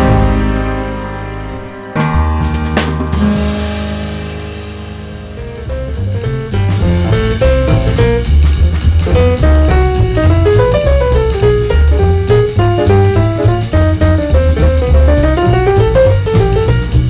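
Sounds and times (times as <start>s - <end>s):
jazz with drums bass and piano: 0.0s - 17.0s.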